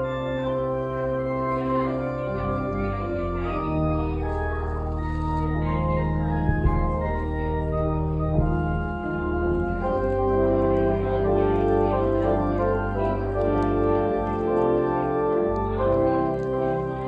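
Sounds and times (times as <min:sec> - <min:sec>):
church organ chords: 0:00.0 - 0:17.0
brief knocks: 0:06.5 - 0:07.2.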